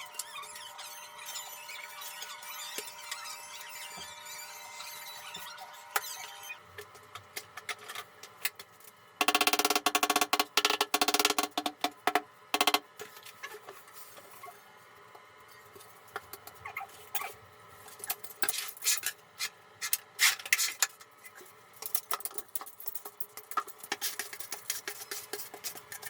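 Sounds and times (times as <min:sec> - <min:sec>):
hard objects clicking together: 0:09.2 - 0:12.8.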